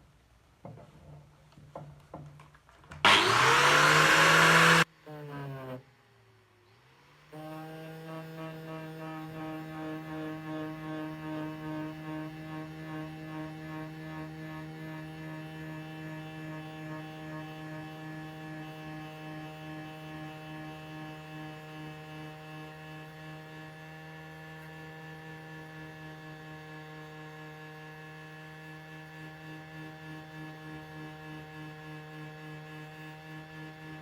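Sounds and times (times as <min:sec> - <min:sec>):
electric motor hum: 0:03.1 - 0:04.9.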